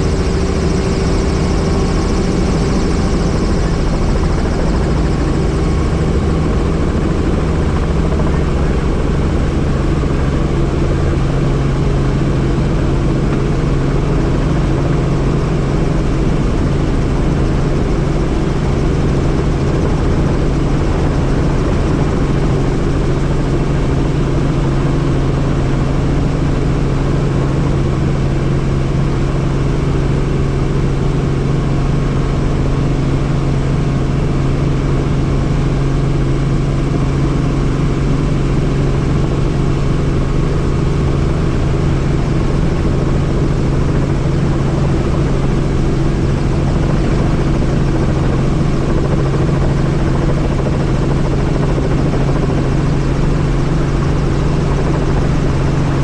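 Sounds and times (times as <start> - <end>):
helicopter rotor and engine drone: 0.0 - 56.0.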